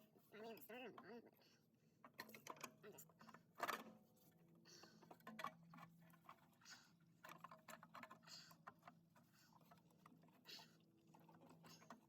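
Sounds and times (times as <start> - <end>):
faint clicks and rustles: 2.0 - 12.0.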